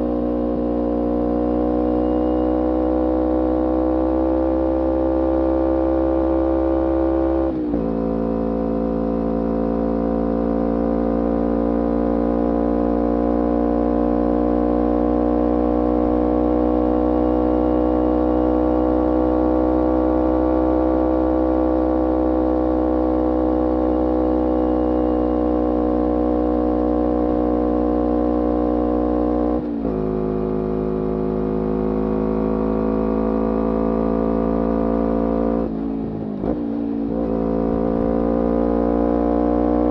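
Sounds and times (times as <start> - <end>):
motorcycle engine shifting gears: 26.0 - 39.9.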